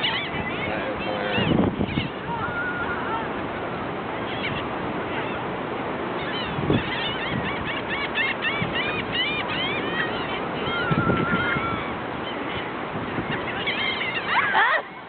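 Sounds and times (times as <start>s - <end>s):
gulls calling: 0.0s - 15.0s.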